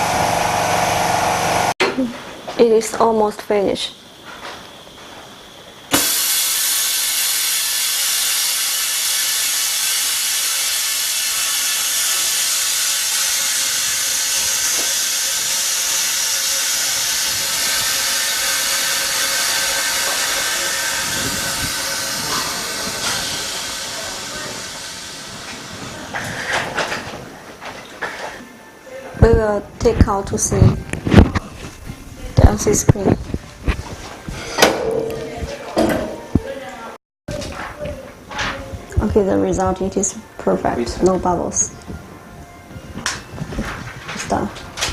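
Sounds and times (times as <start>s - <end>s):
compressed air venting hiss: 5.9s - 26.6s.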